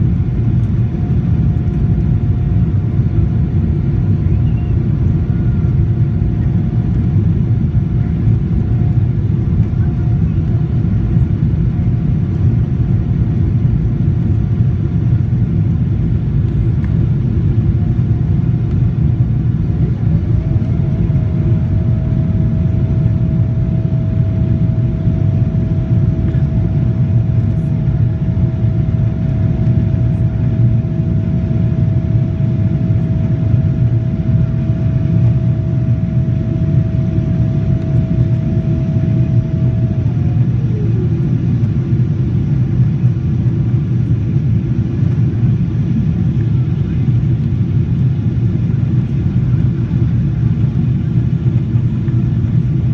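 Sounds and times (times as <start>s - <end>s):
jet engine low rumble: 0.0s - 52.9s
thin engine whine: 19.6s - 41.8s.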